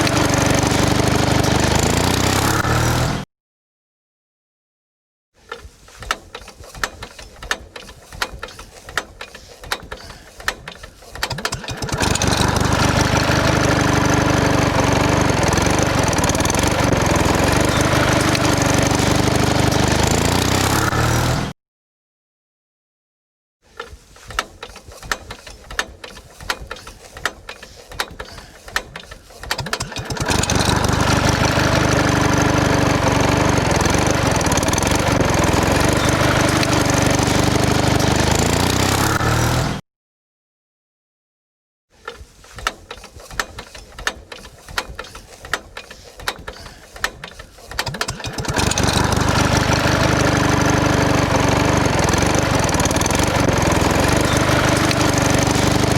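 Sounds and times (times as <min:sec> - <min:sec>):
small engine idling and revving: 0:00.0 - 0:03.3, 0:06.3 - 0:21.6, 0:24.6 - 0:39.8, 0:42.0 - 0:55.9
irregular clicking: 0:42.0 - 0:48.6.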